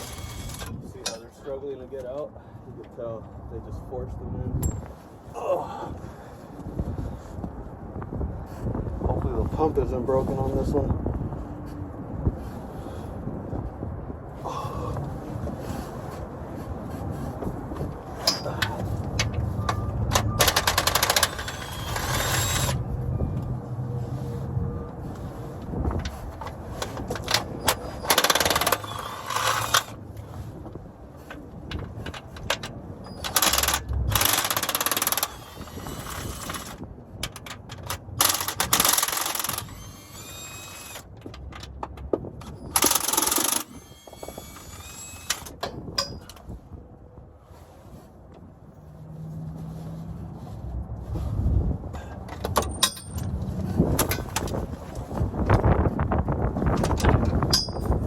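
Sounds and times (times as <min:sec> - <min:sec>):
wind rumbling on microphone: 0:00.0 - 0:58.0
impact wrench hammering: 0:28.0 - 0:29.9, 0:57.5 - 0:57.9.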